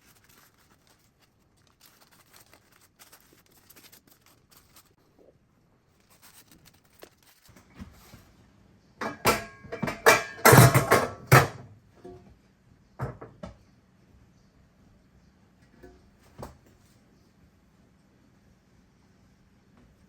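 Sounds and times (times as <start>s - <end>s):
objects clattering: 9.0s - 12.2s.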